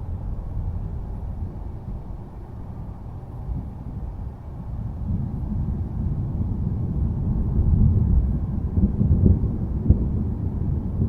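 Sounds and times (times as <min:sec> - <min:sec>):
thunder crackles: 0:03.5 - 0:11.0
distant thunder rumbling: 0:04.8 - 0:11.0.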